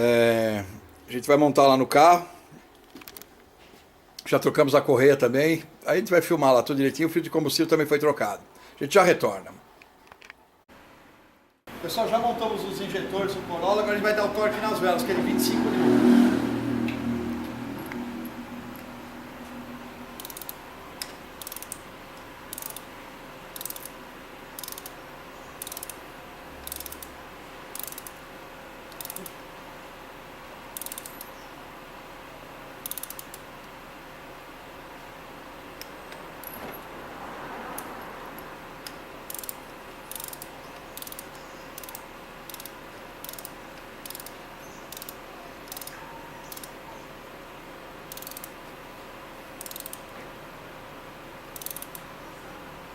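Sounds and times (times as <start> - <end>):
ratchet wrench clicking: 20.2 - 21.8, 22.5 - 22.9, 23.6 - 24.0, 24.6 - 25.0, 25.6 - 26.0, 26.6 - 28.2, 28.9 - 29.3, 30.8 - 31.3, 32.8 - 33.4, 37.8 - 46.8, 48.1 - 48.5, 49.6 - 50.1, 51.6 - 52.0.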